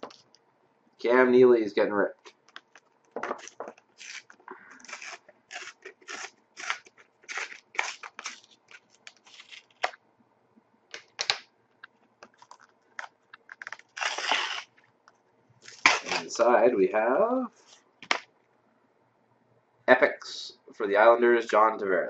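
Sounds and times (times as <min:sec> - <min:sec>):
card stock tearing: 0:03.3 - 0:10.0, 0:13.5 - 0:14.7, 0:15.7 - 0:16.3.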